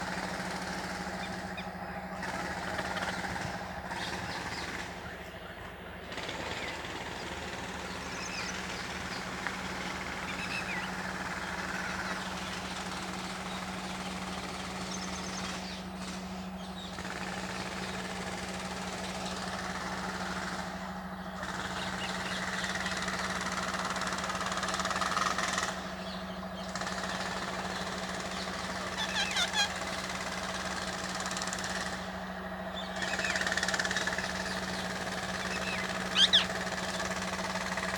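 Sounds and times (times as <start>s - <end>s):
engine droning: 0.0s - 37.9s
parakeets calling shrilly: 0.7s - 18.0s, 25.1s - 30.8s, 32.6s - 37.9s.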